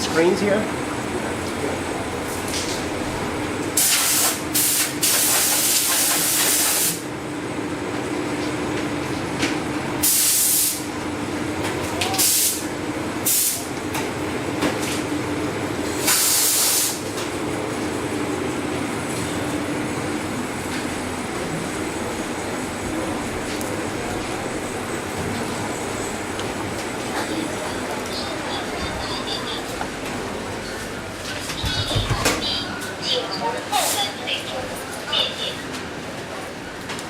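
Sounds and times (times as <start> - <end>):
steady machine hum: 0.0 - 5.0, 6.9 - 36.9
compressed air hisses: 10.0 - 10.9, 16.0 - 17.0.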